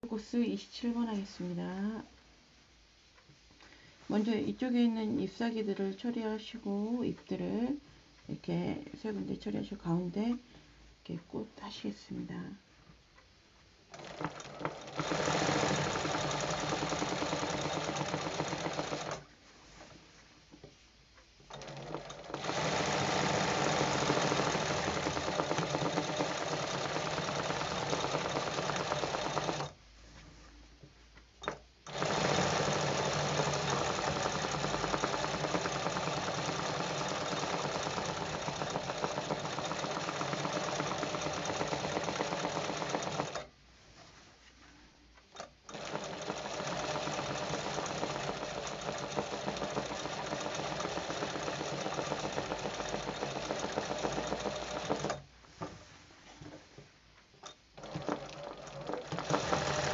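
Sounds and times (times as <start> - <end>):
sewing machine stitching: 13.9 - 19.3, 21.5 - 29.8, 31.4 - 43.5, 45.4 - 55.3, 57.4 - 59.9.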